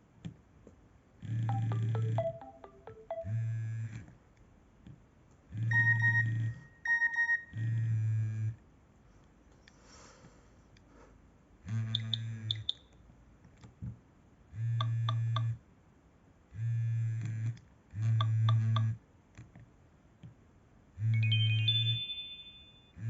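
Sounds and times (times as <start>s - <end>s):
phone vibrating buzz: 1.2s - 4.1s, 5.5s - 8.6s, 11.7s - 12.7s, 14.6s - 15.6s, 16.6s - 19.0s, 21.0s - 23.0s
high beeping ringtone notes: 1.5s - 3.5s, 5.7s - 7.5s, 21.1s - 23.0s.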